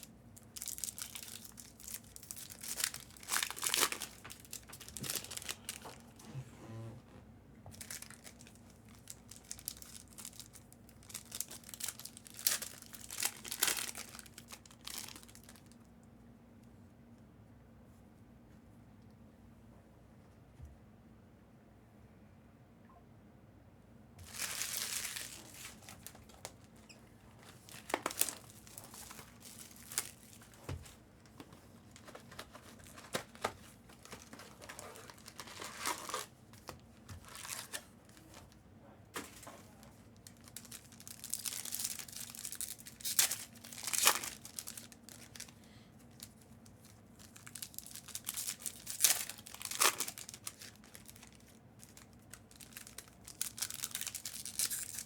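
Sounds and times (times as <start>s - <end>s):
card pack wrappers tearing and crinkling: 0.0s - 6.2s, 7.7s - 15.8s, 24.2s - 31.0s, 31.8s - 38.6s, 39.2s - 55.0s.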